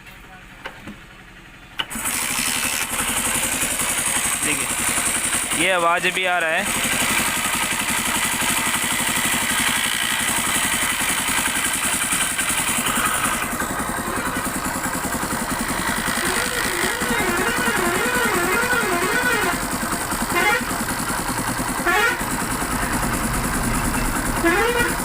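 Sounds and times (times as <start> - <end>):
motorcycle engine running: 0.0 - 25.0
kick-start ratchet chattering: 1.8 - 25.0.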